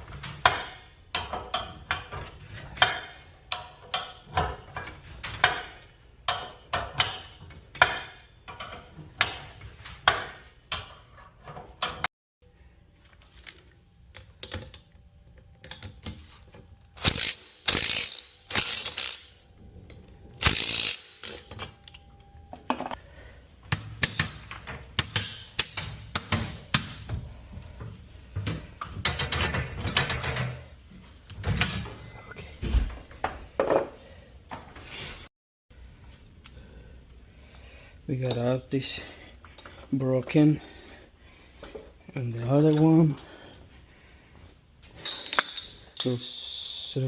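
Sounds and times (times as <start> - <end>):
metal tool clanks and clicks: 0.2 - 12.1, 23.7 - 27.0, 45.0 - 46.2.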